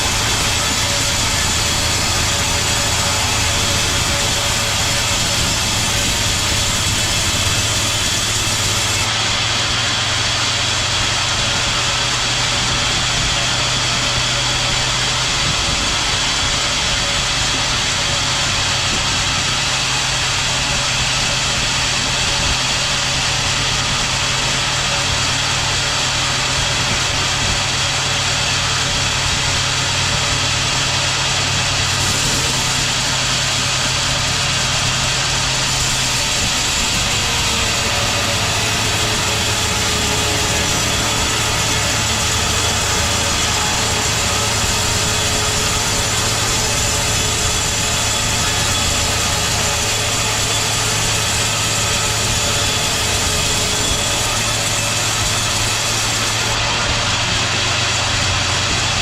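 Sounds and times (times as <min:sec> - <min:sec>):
sawmill machinery motor hum: 0:00.0 - 0:59.0.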